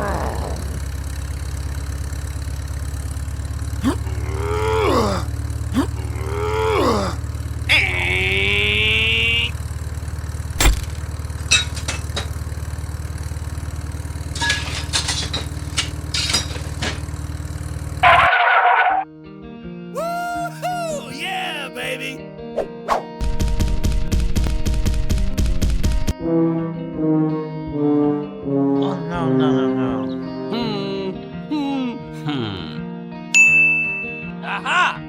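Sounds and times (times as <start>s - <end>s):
truck engine droning: 0.0s - 19.0s
music: 26.1s - 33.4s.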